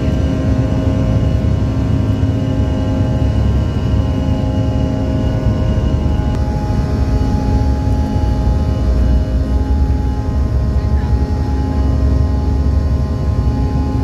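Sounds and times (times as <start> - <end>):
jet engines roaring at takeoff: 0.0 - 14.0.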